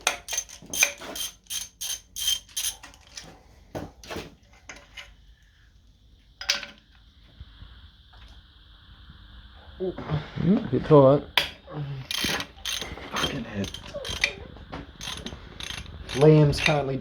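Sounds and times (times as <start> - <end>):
hand tools clinking on metal: 0.0 - 3.3, 12.1 - 16.8.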